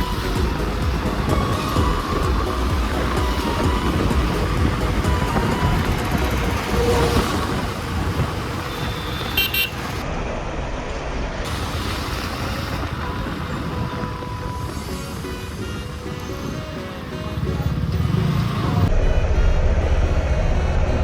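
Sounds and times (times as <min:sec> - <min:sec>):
high horn toot: 0:00.0 - 0:10.0
road traffic: 0:00.0 - 0:21.0.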